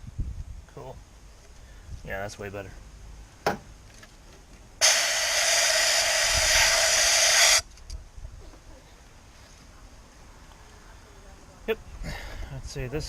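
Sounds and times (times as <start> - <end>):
compressed air blow gun hissing: 4.8 - 7.6.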